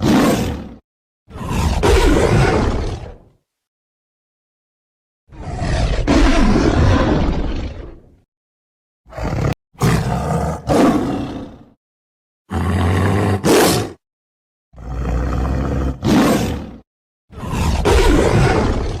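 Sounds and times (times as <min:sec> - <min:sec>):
tiger roaring: 0:00.0 - 0:03.2, 0:05.3 - 0:08.1, 0:09.1 - 0:11.8, 0:12.5 - 0:14.0, 0:14.8 - 0:19.0.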